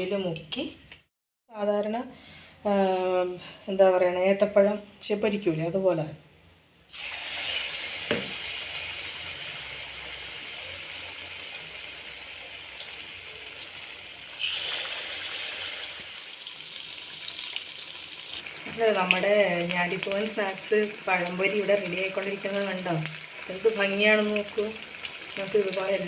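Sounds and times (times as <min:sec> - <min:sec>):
food deep-frying in oil: 0:06.9 - 0:26.0.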